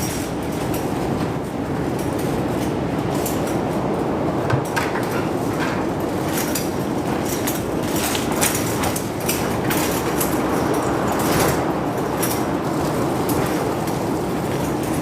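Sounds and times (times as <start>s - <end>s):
short knocks and rattles: 4.4s - 11.7s.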